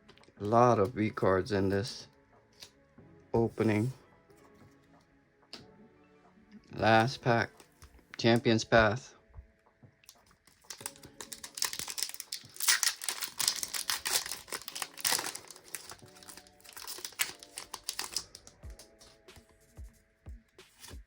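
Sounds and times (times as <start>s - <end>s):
foil wrapper crinkling: 10.5s - 19.2s.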